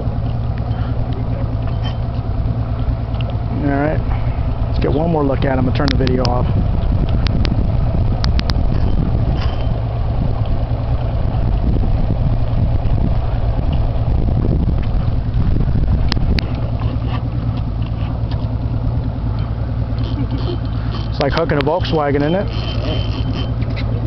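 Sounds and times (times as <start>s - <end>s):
boat engine idling: 0.0s - 24.0s
sharp clicks: 8.2s - 8.6s.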